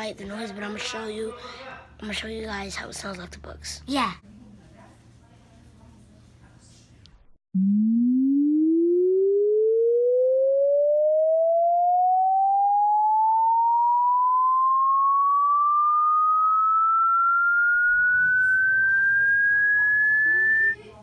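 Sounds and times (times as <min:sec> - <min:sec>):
electronic tone sweeping upward: 0:07.6 - 0:20.8.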